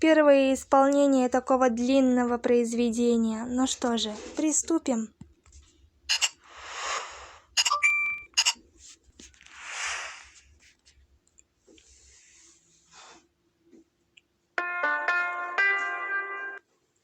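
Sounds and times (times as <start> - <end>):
electronic beep: 6.1 - 6.4, 7.6 - 8.6
sharp clicks: 6.1 - 6.4, 7.6 - 8.6
breaths close to microphone: 6.4 - 7.6
plucked-string music: 14.6 - 16.7.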